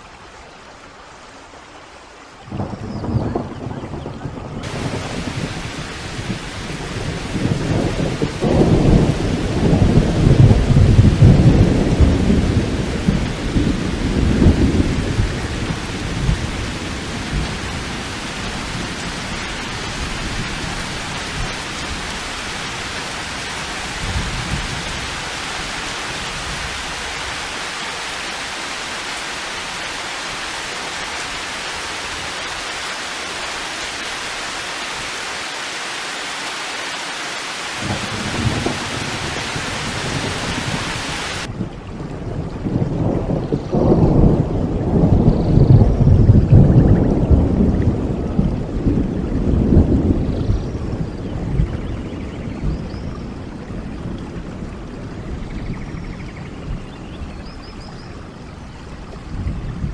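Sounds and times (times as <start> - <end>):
thunder rumbling: 4.6 - 41.5
heavy rain: 4.6 - 59.9.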